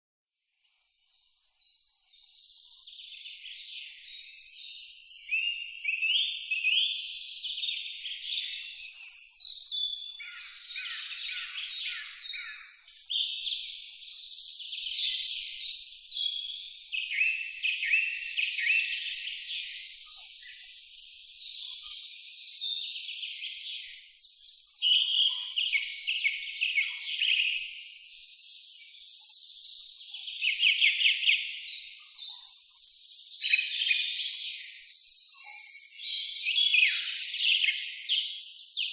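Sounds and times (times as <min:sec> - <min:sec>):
cricket chirping: 0:00.6 - 0:38.9.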